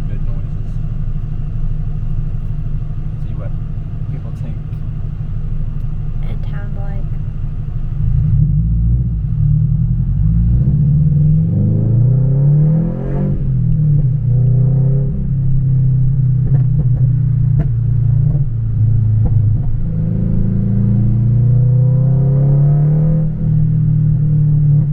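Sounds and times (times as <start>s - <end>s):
car engine revving: 0.0s - 24.9s
sharp exhaust pops: 16.2s - 20.0s.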